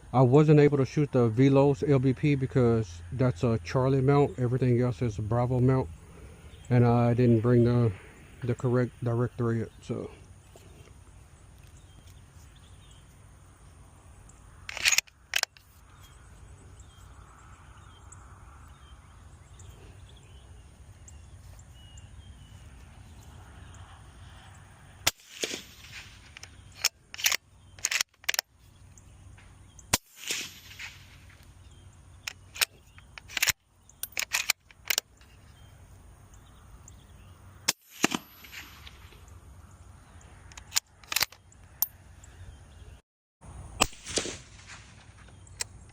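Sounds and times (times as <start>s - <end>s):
rifle bolt clicks: 14.7s - 15.7s, 25.4s - 28.5s, 32.3s - 35.1s, 40.5s - 41.4s
suppressed rifle shots: 25.0s - 26.6s, 29.9s - 31.4s, 37.7s - 39.1s, 43.8s - 45.3s.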